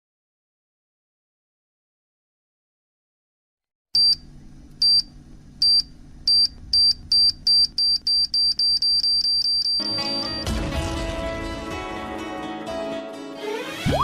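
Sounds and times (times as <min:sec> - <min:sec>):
high-pitched electronic beeps: 0:13.5 - 0:14.0.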